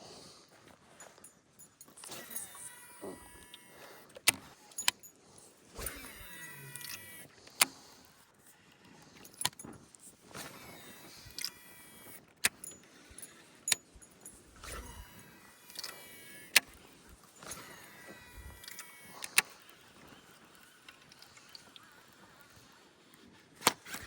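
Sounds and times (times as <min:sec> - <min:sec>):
reel and tackle clicks: 0:01.1 - 0:24.0
fishing reel line whine: 0:02.0 - 0:04.2, 0:05.8 - 0:07.3, 0:14.6 - 0:22.9.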